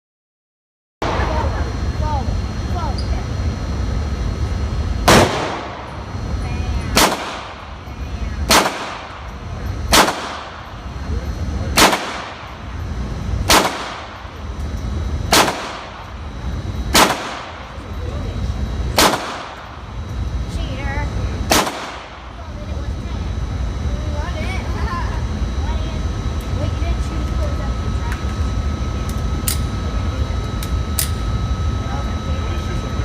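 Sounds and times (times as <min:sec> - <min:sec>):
low rumble: 0:01.0 - 0:33.0
pistol shots: 0:05.1 - 0:05.9, 0:06.9 - 0:07.7, 0:08.5 - 0:09.3, 0:09.9 - 0:10.7, 0:11.8 - 0:12.6, 0:13.4 - 0:14.2, 0:15.3 - 0:16.1, 0:16.9 - 0:17.6, 0:19.0 - 0:19.7, 0:21.5 - 0:22.2.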